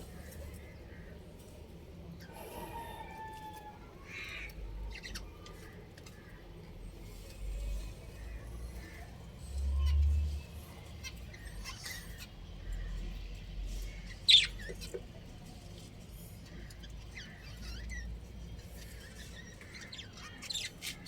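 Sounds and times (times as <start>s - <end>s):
budgerigars chirping: 13.9s - 14.9s.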